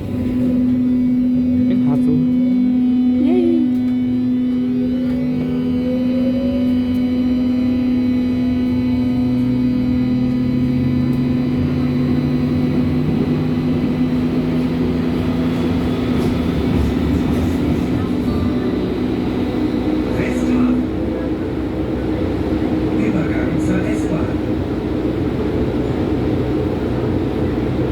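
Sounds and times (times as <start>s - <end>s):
electric train drive whine: 0.0s - 27.9s
wheels rumbling on track: 0.0s - 27.9s.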